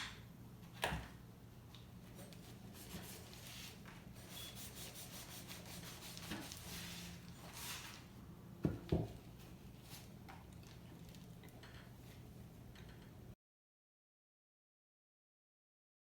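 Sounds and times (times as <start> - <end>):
faint rubbing and rustling: 2.3 - 8.1.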